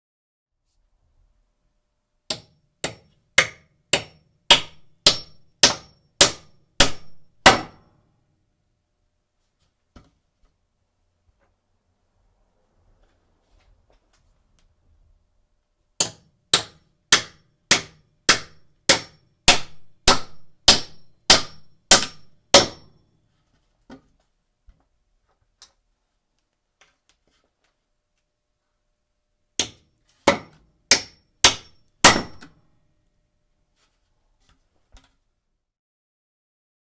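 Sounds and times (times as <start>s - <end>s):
hammer striking nail into wood: 2.3s - 7.9s, 16.0s - 23.0s, 29.6s - 32.6s.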